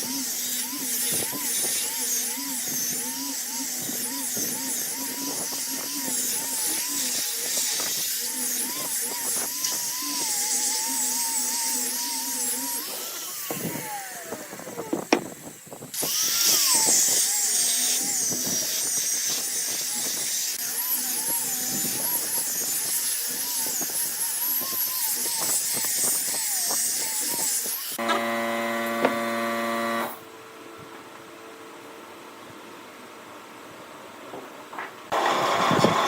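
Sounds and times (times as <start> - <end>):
wood lathe cutting whine: 16.0 - 30.2, 35.1 - 36.0.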